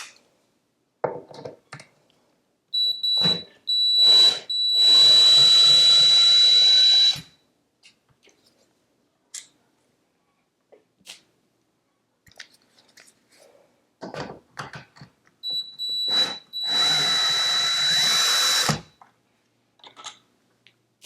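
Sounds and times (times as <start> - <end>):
cordless drill whining: 2.8 - 7.3, 15.5 - 18.9.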